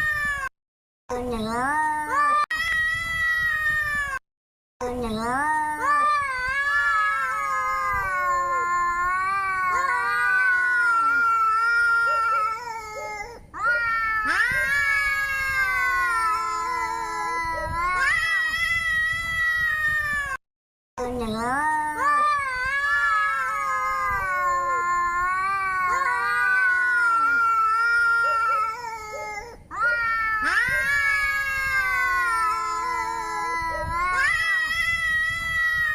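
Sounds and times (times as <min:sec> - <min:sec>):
cat yowling: 0:06.5 - 0:19.5, 0:22.7 - 0:35.8.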